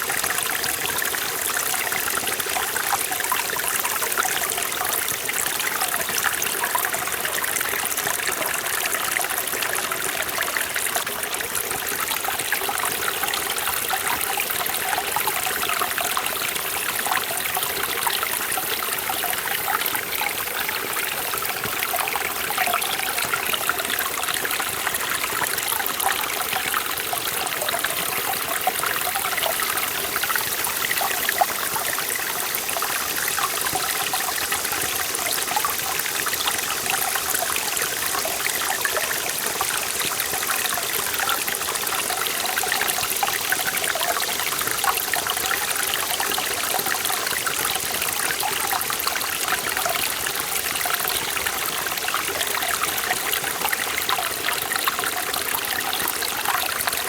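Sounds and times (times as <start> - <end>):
stream water splashing over rocks: 0.0 - 57.0.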